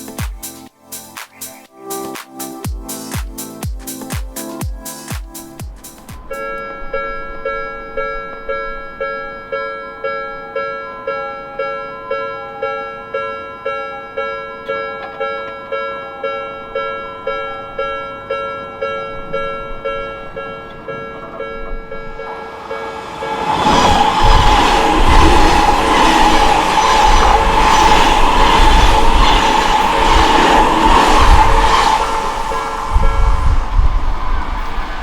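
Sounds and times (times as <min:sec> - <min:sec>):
train passing rumble: 0:18.8 - 0:35.0.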